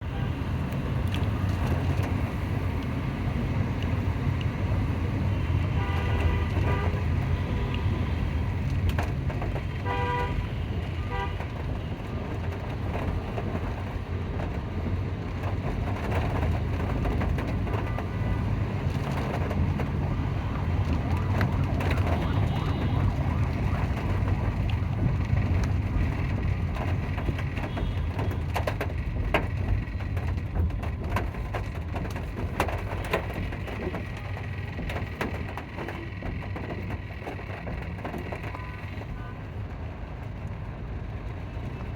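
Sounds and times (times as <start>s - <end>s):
street traffic rumble: 0.0s - 41.9s
vehicle horns: 5.3s - 8.2s, 9.8s - 11.9s, 22.1s - 23.4s, 27.6s - 28.4s.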